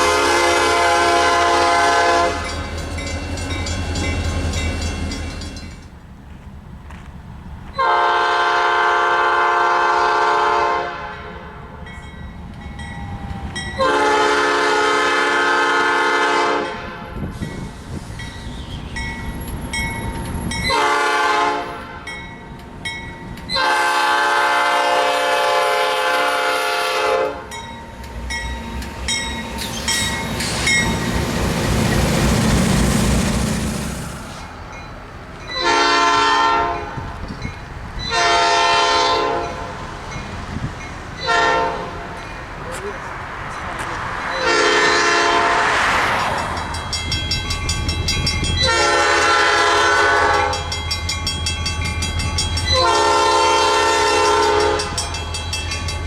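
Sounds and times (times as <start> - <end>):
locomotive air horn blasts: 0.0 - 2.8, 7.8 - 11.6, 13.8 - 17.3, 20.7 - 22.1, 23.5 - 27.6, 35.6 - 37.0, 38.1 - 39.7, 41.2 - 42.2, 44.3 - 45.9, 48.6 - 50.8, 52.7 - 55.0
passing train: 0.0 - 56.0.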